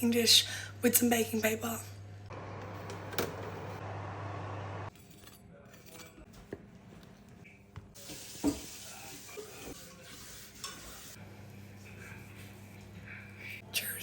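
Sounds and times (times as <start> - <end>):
kitchenware clinking: 10.6 - 11.0.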